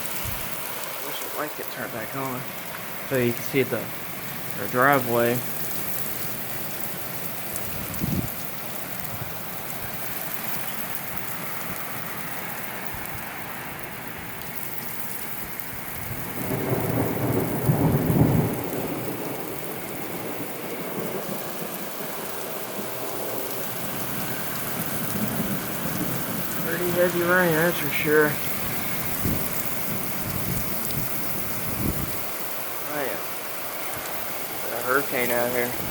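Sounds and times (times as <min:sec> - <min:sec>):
heavy rain: 0:00.0 - 0:35.9
thunder rumble: 0:00.1 - 0:10.3, 0:15.4 - 0:35.9.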